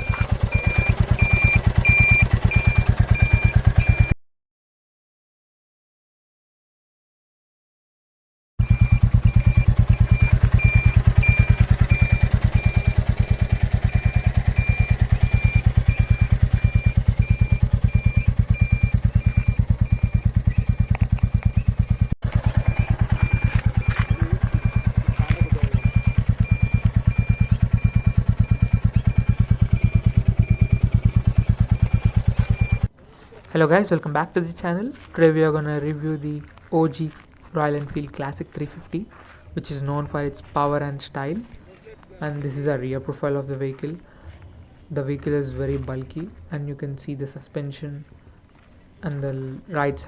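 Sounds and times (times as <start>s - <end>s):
motorcycle engine idling: 0.0s - 4.1s, 8.6s - 32.9s.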